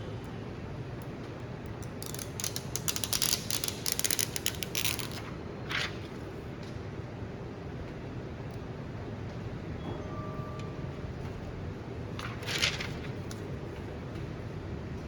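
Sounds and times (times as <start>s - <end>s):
plastic film crackling: 2.0s - 5.3s.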